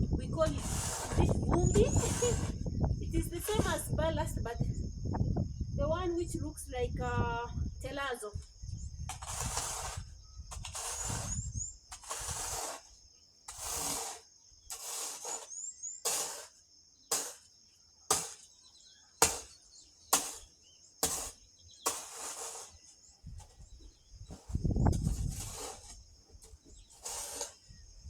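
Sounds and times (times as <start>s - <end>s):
gravel being scraped: 0.0s - 2.8s, 9.1s - 18.6s, 19.2s - 27.8s.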